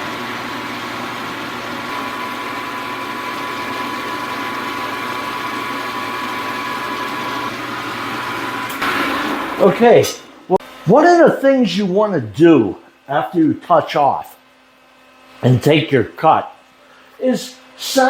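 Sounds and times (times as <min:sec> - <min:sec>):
milling machine motor whine: 0:00.0 - 0:11.0.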